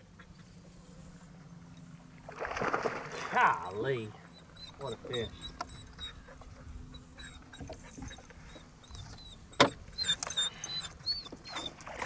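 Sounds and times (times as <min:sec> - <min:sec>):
knocks and rattles in a boat: 0:07.5 - 0:10.3.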